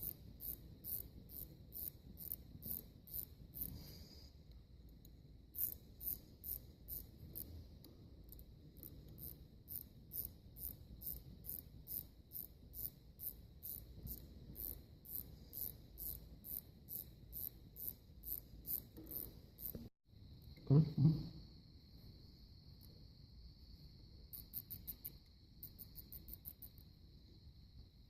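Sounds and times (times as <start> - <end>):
faint high-pitched clicking: 24.3 - 27.0.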